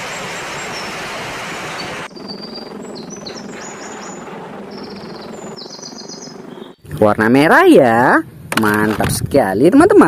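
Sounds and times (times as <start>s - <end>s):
small birds chirping: 0.0s - 6.9s.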